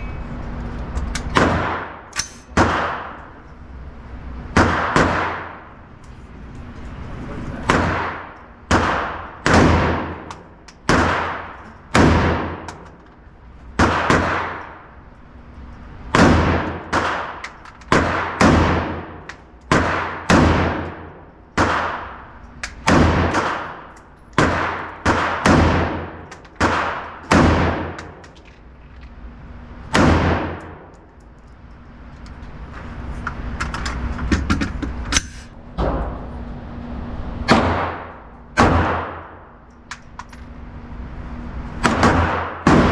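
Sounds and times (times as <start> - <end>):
rifle shots echoing: 1.3 - 3.3, 4.5 - 5.8, 7.6 - 12.8, 13.8 - 14.9, 16.1 - 28.2, 29.9 - 30.9, 37.5 - 39.4, 41.8 - 42.9.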